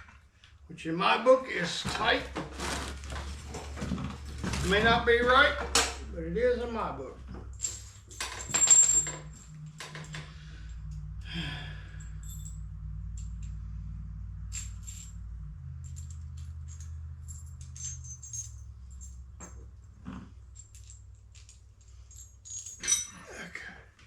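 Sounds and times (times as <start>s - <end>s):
low steady hum: 0.0s - 24.0s
metal tools clinking: 7.2s - 13.6s, 14.4s - 19.8s, 20.5s - 23.3s.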